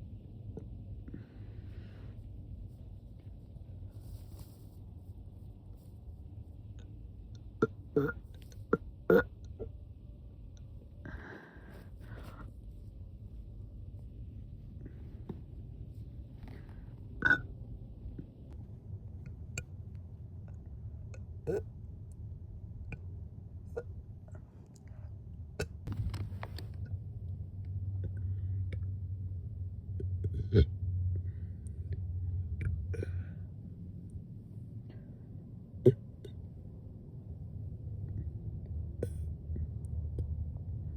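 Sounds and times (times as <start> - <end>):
low steady hum: 0.0 - 40.9
woman burping: 8.0 - 8.2, 17.2 - 17.5.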